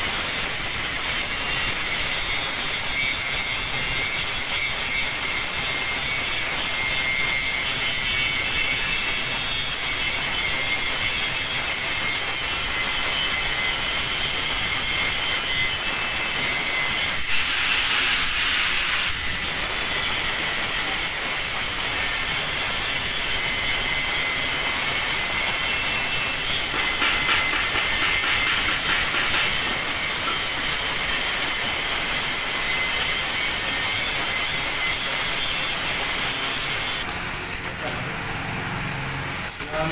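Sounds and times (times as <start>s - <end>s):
welding arc crackling and hissing: 0.0s - 38.2s, 39.2s - 39.9s.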